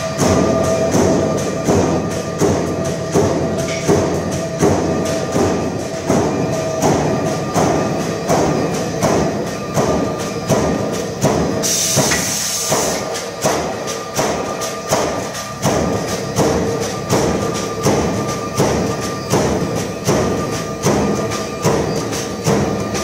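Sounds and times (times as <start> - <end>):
music with percussive beat: 0.0 - 23.0
short burst of hiss: 11.6 - 13.1.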